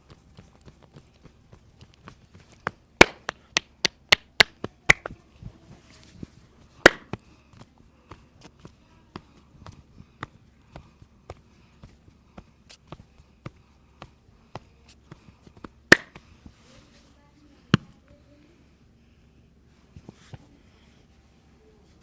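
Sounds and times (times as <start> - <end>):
light hand taps: 0.0 - 16.6
loud sharp hand slaps: 3.0 - 5.2, 6.9 - 7.2, 15.9 - 16.2.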